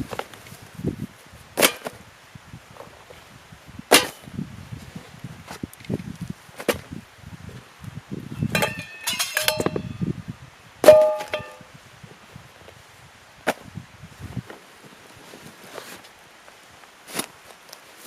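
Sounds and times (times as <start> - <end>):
rustling and clicks of gear: 0.0 - 0.8, 4.8 - 6.9, 14.4 - 18.0
metal items clanging: 8.4 - 10.0, 10.8 - 11.6.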